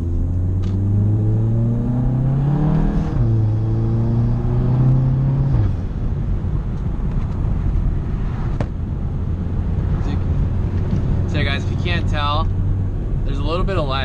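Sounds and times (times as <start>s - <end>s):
car engine accelerating: 0.0s - 14.0s
low engine rumble: 5.2s - 14.0s.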